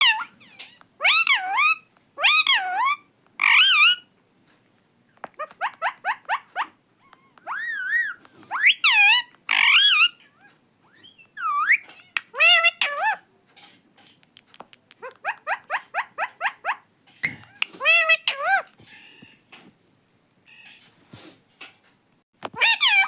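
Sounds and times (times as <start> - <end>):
parakeet calling: 0.0 - 4.1, 5.4 - 13.2, 15.0 - 19.4, 22.6 - 23.0.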